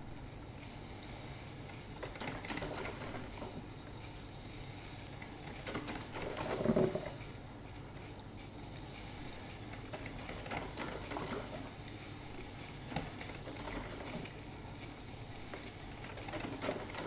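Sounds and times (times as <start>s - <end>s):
coffee machine sputtering and crackling: 0.1s - 17.0s.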